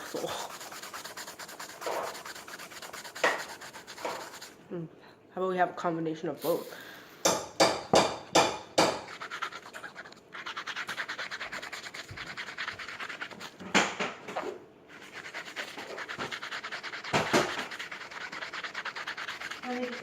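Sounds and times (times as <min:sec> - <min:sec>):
brush scrubbing a sneaker: 0:00.0 - 0:04.6, 0:08.8 - 0:13.6, 0:14.4 - 0:20.0.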